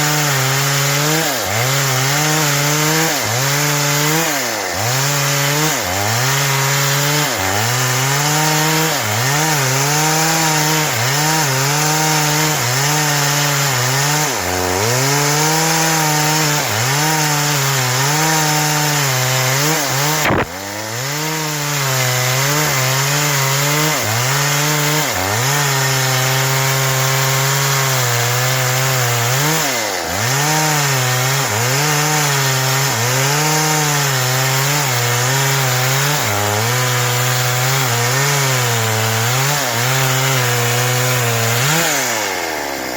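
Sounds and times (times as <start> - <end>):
chainsaw cutting through wood: 0.0 - 42.9
sharp click: 20.0 - 20.6.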